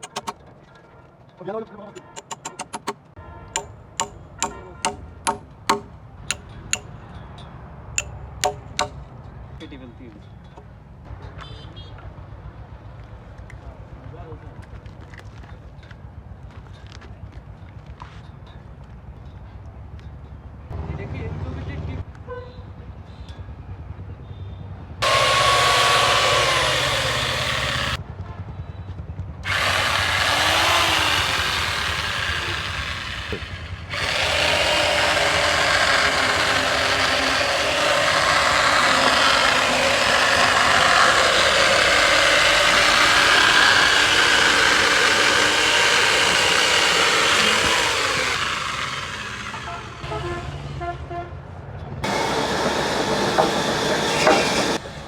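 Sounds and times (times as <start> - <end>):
power tool running loudly: 0.0 - 0.3, 3.6 - 6.9, 25.0 - 28.0, 29.5 - 50.2, 52.0 - 55.0.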